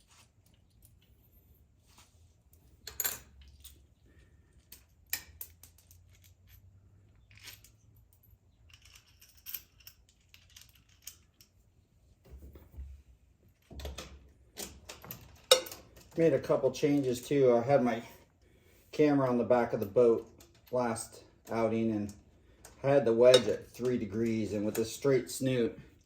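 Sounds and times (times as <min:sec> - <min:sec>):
metallic clicks of bolts and tools: 0:04.6 - 0:11.6, 0:13.6 - 0:16.2.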